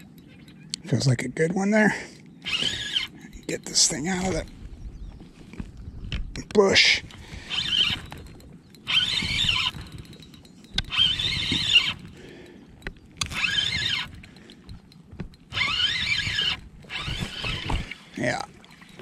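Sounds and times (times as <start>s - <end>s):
fishing reel gears whining: 0.0s - 0.8s, 2.4s - 4.7s, 7.2s - 19.0s.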